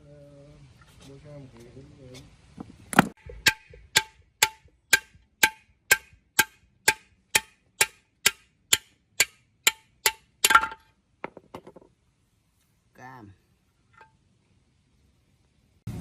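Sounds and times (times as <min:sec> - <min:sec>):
hammer striking metal: 0:03.2 - 0:10.8.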